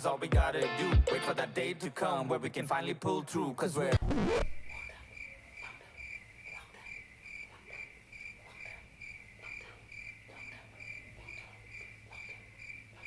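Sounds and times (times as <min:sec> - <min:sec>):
faint low hum: 0:04.0 - 0:13.0
cricket chirping: 0:04.6 - 0:13.0.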